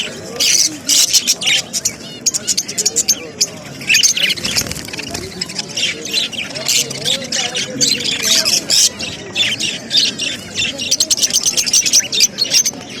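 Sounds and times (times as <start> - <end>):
parrots chirping and squawking: 0.0 - 13.0.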